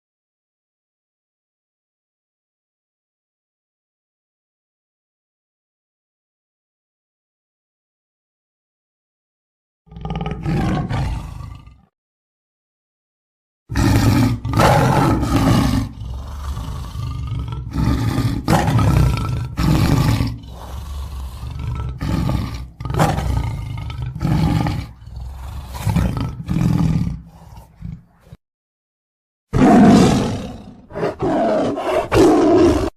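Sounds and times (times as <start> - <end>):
big cat roaring and growling: 9.9 - 11.9, 13.7 - 28.4, 29.5 - 32.9.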